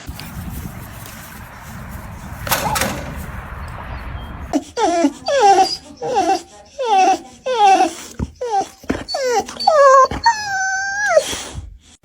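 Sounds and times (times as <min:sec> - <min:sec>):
dog whining and crying: 0:04.6 - 0:11.6.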